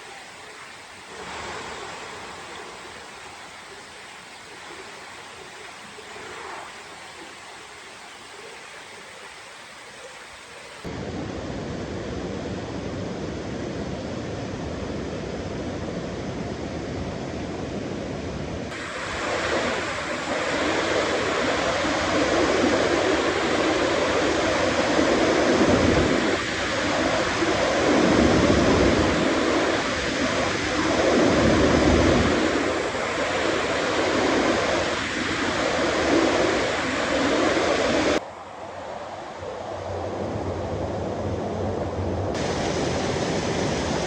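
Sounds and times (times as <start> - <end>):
stream water rushing: 0.0 - 11.0, 18.7 - 38.8, 42.4 - 44.0.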